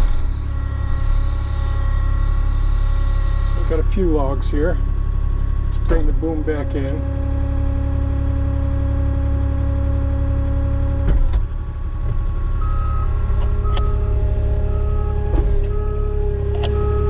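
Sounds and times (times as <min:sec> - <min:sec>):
diesel engine under hydraulic load: 0:00.0 - 0:17.0
reverse alarm short beeps: 0:12.6 - 0:17.0.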